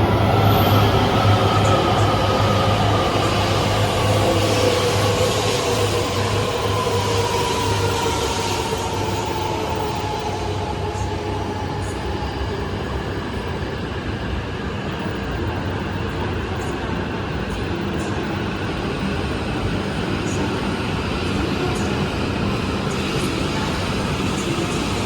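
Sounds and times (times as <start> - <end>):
train rumble and hiss: 0.0 - 25.0.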